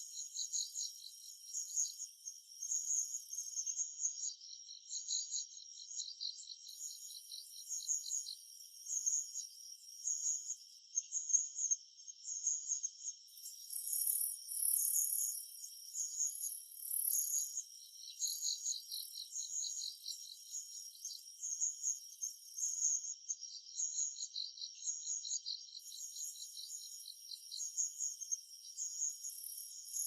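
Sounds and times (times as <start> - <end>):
insects chirping in pulses: 13.4 - 30.0.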